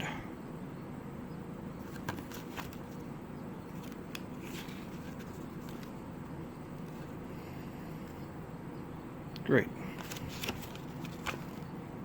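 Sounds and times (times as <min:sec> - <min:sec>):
steady low hum: 0:00.0 - 0:12.0
paper rustling: 0:01.8 - 0:03.0, 0:03.7 - 0:06.0, 0:09.9 - 0:11.7.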